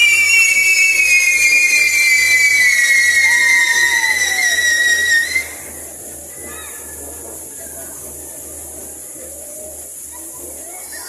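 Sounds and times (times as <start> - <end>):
pyrotechnic whistle falling in pitch: 0.0 - 5.7.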